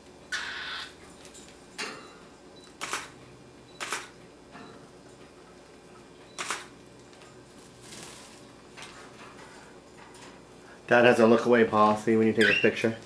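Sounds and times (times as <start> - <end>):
camera shutter clicking: 2.8 - 3.1, 3.8 - 4.1, 6.4 - 6.7
soft rustle: 7.5 - 9.6.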